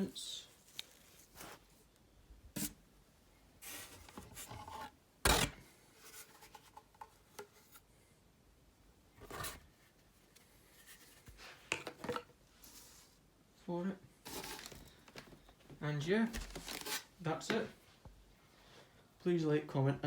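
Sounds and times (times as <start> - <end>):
packaging rustling: 14.3 - 15.5, 16.2 - 17.1.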